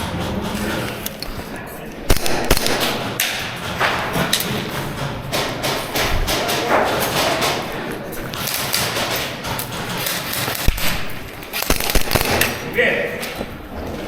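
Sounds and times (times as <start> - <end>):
airsoft pistol shots clacking: 2.1 - 3.5, 10.4 - 12.7.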